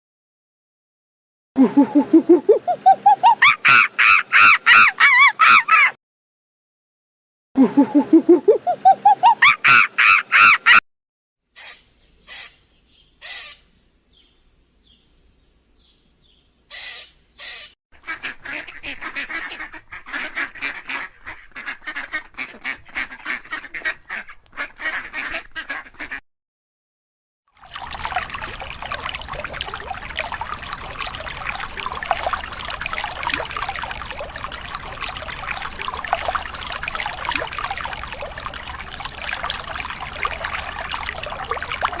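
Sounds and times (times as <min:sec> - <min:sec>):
birds calling: 0:11.6 - 0:15.0, 0:15.8 - 0:17.8.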